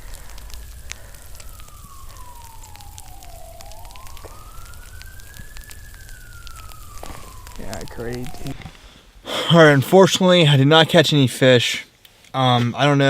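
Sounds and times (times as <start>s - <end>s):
siren wailing: 0.0s - 9.6s
freezing rain and ice pellets hitting: 0.0s - 11.2s.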